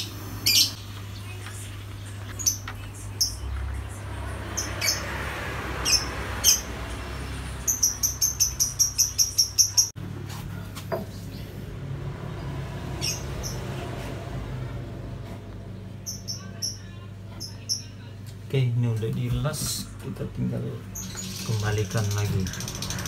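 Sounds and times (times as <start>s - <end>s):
small bird chirping: 0.0s - 5.1s, 5.8s - 10.0s, 13.0s - 13.6s, 16.0s - 18.0s, 20.9s - 23.0s.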